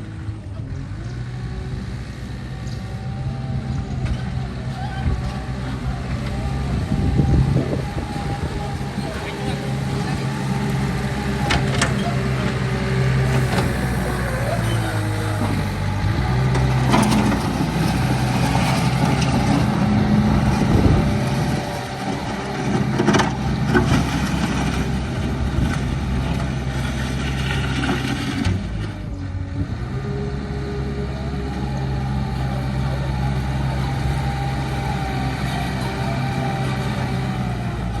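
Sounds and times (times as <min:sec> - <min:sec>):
bulldozer engine running: 0:00.0 - 0:38.0.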